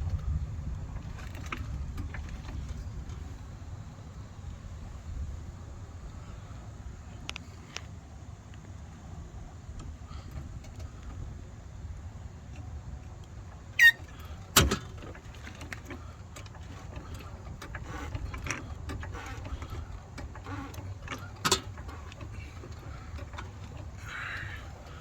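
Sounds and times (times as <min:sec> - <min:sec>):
steady low rumble: 0:00.0 - 0:13.6
car jack clicks and creaks: 0:12.5 - 0:25.0
short squeak: 0:13.8 - 0:14.1.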